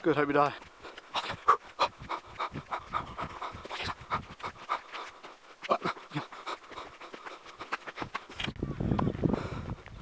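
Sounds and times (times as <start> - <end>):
dog panting rapidly: 0.8 - 8.2.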